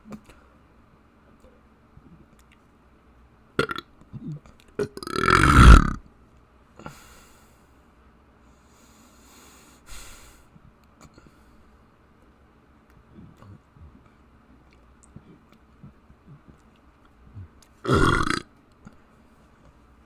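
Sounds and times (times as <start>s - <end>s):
person burping: 3.6s - 6.0s, 17.3s - 18.5s
soft breathy noises: 6.7s - 12.0s, 12.9s - 17.8s.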